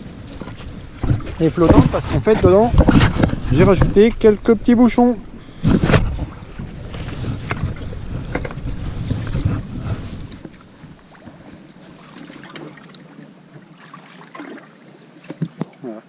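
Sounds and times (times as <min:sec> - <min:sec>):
wind buffeting microphone: 0:00.0 - 0:11.6.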